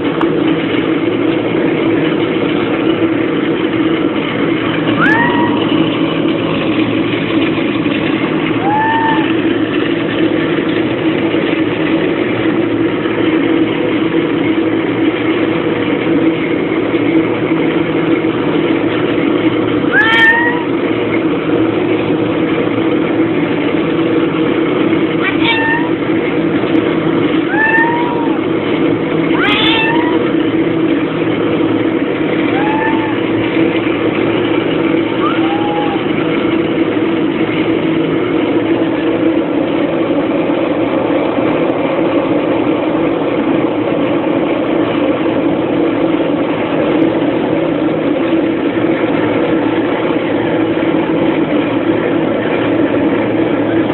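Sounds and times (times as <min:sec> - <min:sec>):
mechanical drone: 0:00.0 - 0:53.9
cat meowing: 0:05.0 - 0:05.8, 0:08.6 - 0:09.5, 0:19.9 - 0:20.8, 0:25.2 - 0:26.0, 0:27.5 - 0:28.5, 0:29.3 - 0:30.4, 0:32.4 - 0:33.3, 0:35.1 - 0:36.1.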